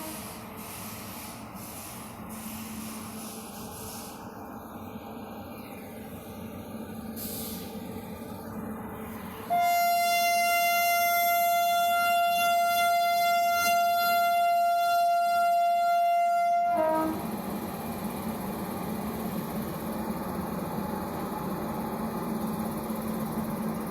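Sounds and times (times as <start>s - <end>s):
locomotive air horn blast: 0.0s - 0.4s, 9.4s - 17.2s.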